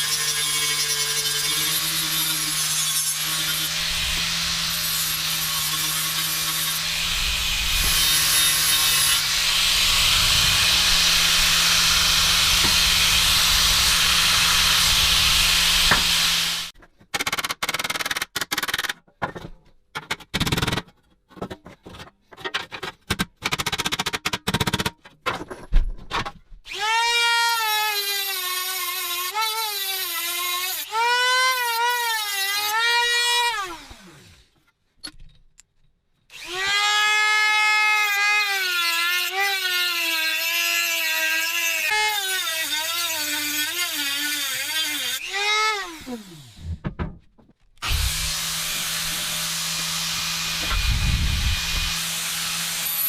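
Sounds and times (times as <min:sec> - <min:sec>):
power tool grinding: 0:00.0 - 0:16.8, 0:41.2 - 0:46.8, 0:47.8 - 0:53.0
choppy bursts of tool noise: 0:00.0 - 0:18.9, 0:47.8 - 0:53.0.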